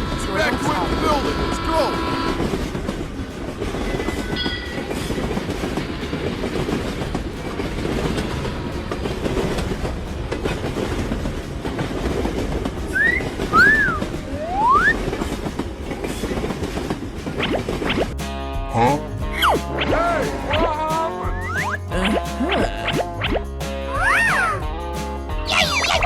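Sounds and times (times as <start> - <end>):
train rumbling on track: 0.0 - 25.9
wheel clatter on rails: 2.2 - 18.3.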